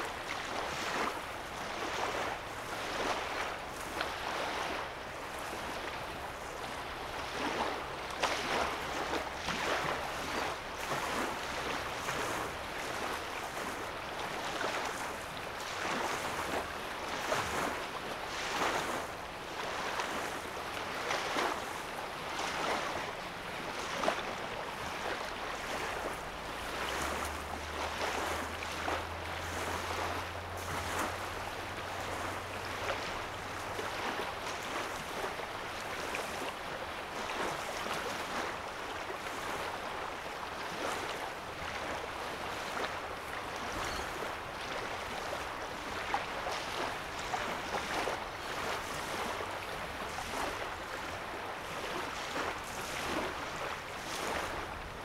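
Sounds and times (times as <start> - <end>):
waves lapping on sandy shore: 0.0 - 55.0.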